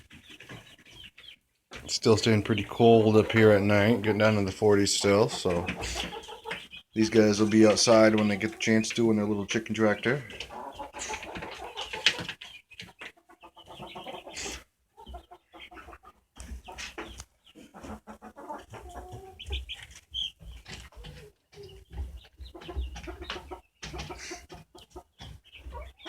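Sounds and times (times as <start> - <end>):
chickens clucking: 0.0 - 26.0.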